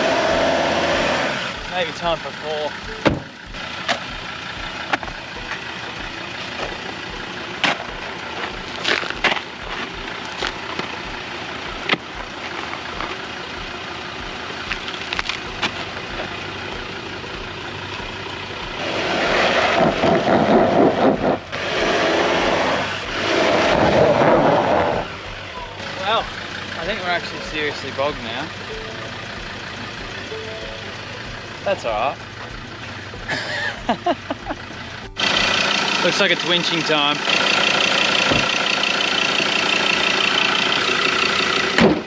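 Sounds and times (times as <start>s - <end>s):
vehicle engine revving: 0.0s - 42.0s
sharp cracks and knocks: 41.7s - 42.0s.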